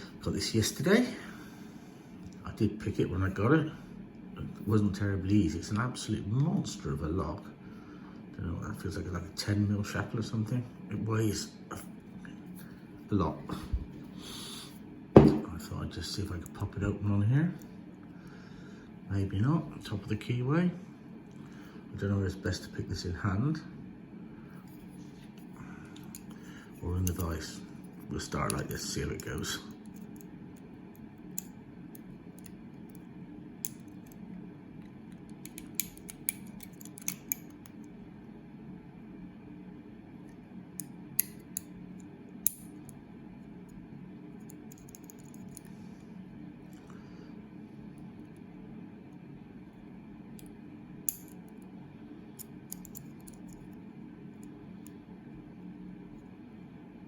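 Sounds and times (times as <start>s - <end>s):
steady low hum: 0.0s - 57.0s
lock pick clicking and scraping: 35.2s - 37.7s, 44.5s - 45.7s, 51.1s - 51.4s, 52.4s - 53.7s.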